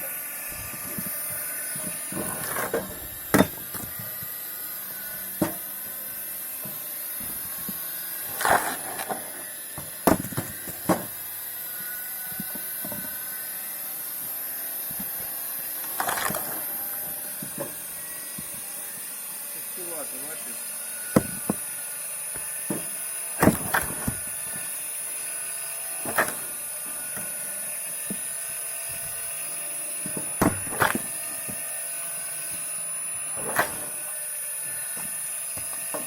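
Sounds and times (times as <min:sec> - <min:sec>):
logs splintering apart: 0:10.0 - 0:11.2, 0:15.8 - 0:16.7, 0:22.4 - 0:24.7, 0:26.0 - 0:34.3.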